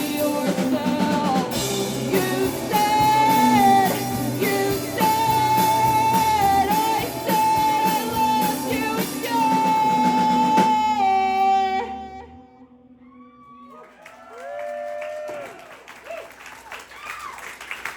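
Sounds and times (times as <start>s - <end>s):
drum beat: 0.0s - 10.5s
electric guitar: 0.0s - 13.6s
person singing long notes: 0.0s - 13.6s.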